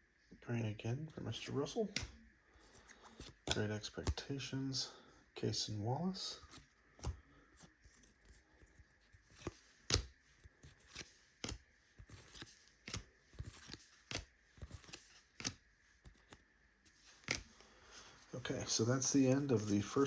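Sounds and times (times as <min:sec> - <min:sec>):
trading cards snapping and sliding: 0:01.9 - 0:04.2, 0:06.4 - 0:18.1.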